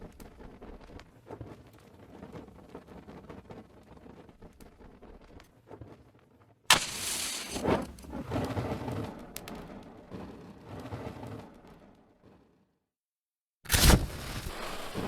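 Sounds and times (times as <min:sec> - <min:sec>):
match striking: 0:06.7 - 0:08.1, 0:13.7 - 0:15.0
match flare hissing: 0:06.7 - 0:08.2.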